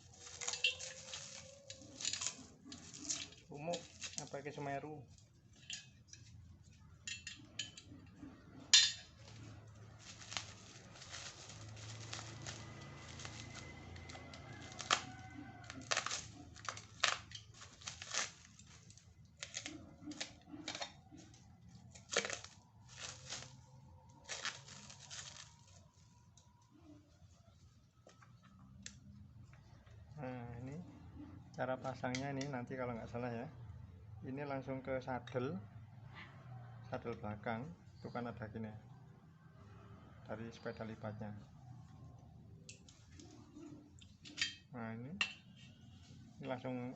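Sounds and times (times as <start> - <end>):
plastic packaging crinkling: 0.0 - 5.2, 9.3 - 20.8, 21.8 - 26.4
parts clicking and knocking: 5.2 - 23.4.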